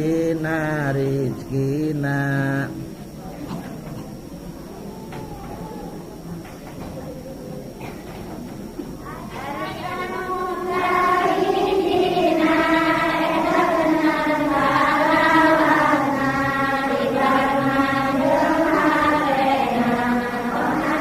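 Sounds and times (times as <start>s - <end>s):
voices chanting together: 0.0s - 3.1s, 9.0s - 21.0s.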